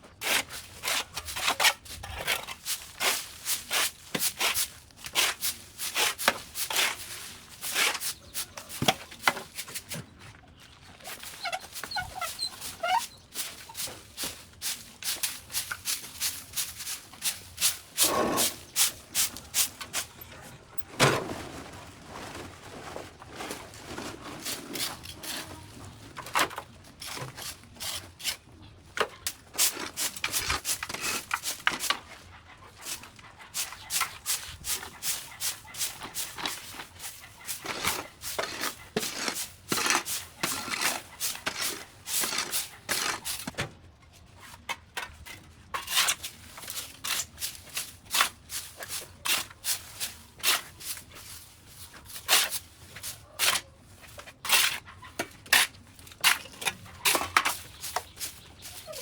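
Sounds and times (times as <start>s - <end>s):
hand tools chopping brush: 0.2s - 10.0s, 11.0s - 20.2s, 32.8s - 43.6s, 45.8s - 59.0s.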